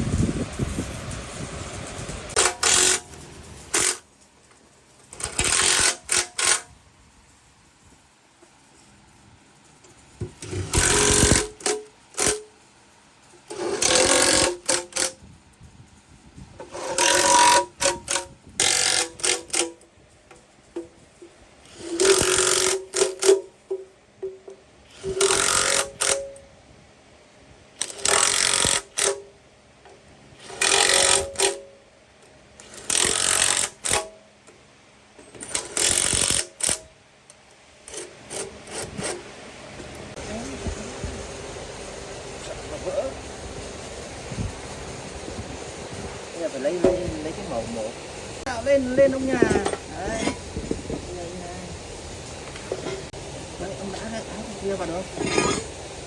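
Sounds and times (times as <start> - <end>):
power tool bursts: 2.3 - 4.1, 5.1 - 6.7, 10.4 - 12.5, 13.5 - 15.2, 16.7 - 19.8, 21.7 - 23.5, 24.9 - 26.4, 27.8 - 29.2, 30.4 - 31.6, 32.6 - 34.1, 35.4 - 36.9.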